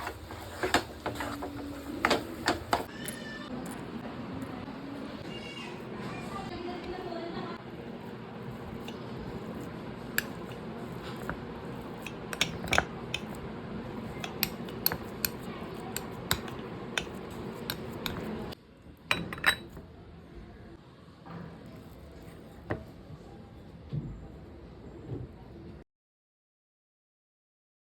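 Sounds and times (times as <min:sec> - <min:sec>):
metal utensils clinking on cookware: 0:08.6 - 0:19.8.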